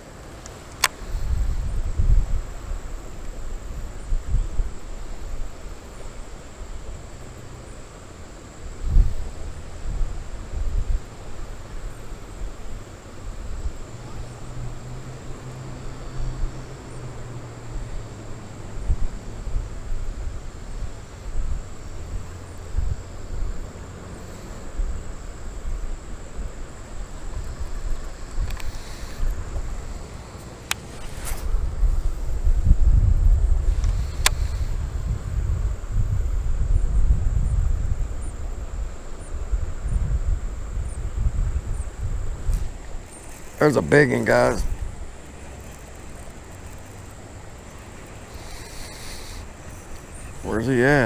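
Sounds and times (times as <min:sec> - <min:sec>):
faint hiss: 0:00.0 - 0:51.0
wind buffeting microphone: 0:00.8 - 0:07.4, 0:08.5 - 0:51.0
faint clicks: 0:28.2 - 0:29.7, 0:44.6 - 0:50.3
high-pitched insect drone: 0:39.1 - 0:51.0.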